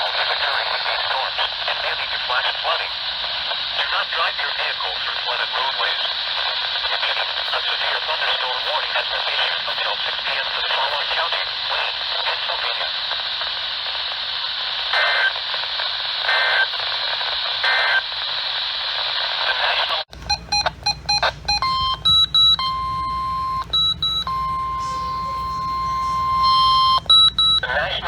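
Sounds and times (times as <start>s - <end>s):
radio static hiss: 0.0s - 22.1s, 23.7s - 28.0s
electronic clicks and beeps: 20.1s - 28.0s
data bursts: 20.3s - 28.0s.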